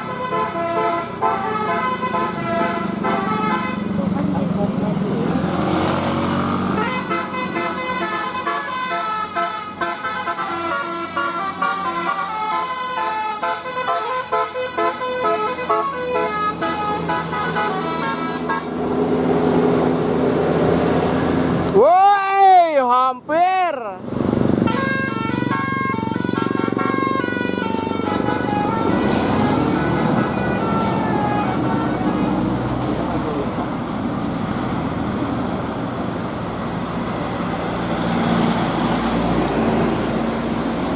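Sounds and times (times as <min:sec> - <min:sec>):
bus horn playing a tune: 0:00.0 - 0:04.2, 0:06.5 - 0:19.1, 0:24.6 - 0:33.4
engine hum: 0:00.0 - 0:21.9, 0:24.0 - 0:40.9
vehicle passing with tyre rush: 0:02.3 - 0:07.6, 0:16.8 - 0:21.8, 0:24.0 - 0:40.9.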